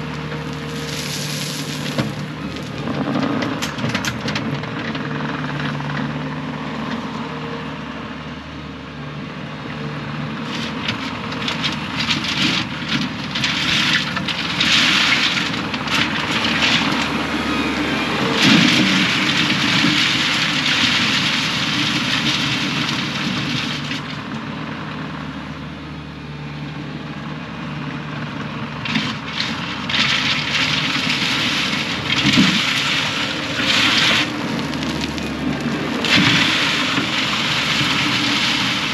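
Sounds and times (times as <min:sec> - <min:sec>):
rushing scraping noise: 0:00.0 - 0:04.2, 0:30.8 - 0:38.9
diesel engine running: 0:00.0 - 0:38.9.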